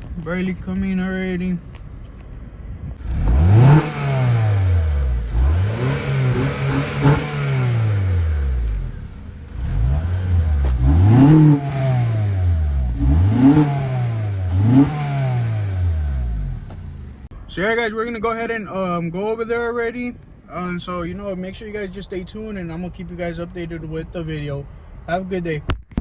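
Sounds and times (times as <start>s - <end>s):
car engine revving: 3.0s - 17.3s.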